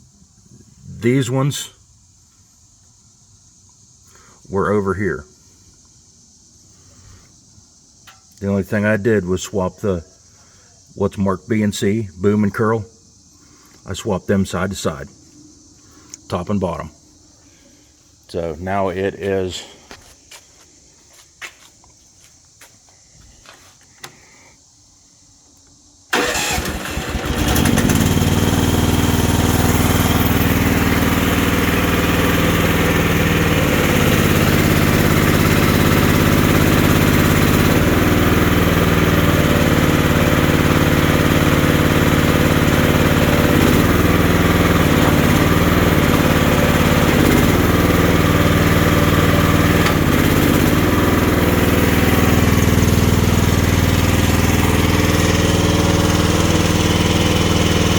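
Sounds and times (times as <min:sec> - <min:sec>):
excavator engine starting and running: 0:26.1 - 0:57.9.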